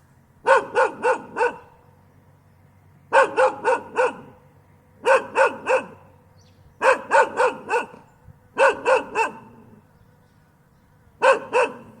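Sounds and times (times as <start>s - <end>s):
dog barking: 0.4s - 1.8s, 3.1s - 4.4s, 5.0s - 6.1s, 6.8s - 9.8s, 11.2s - 12.0s.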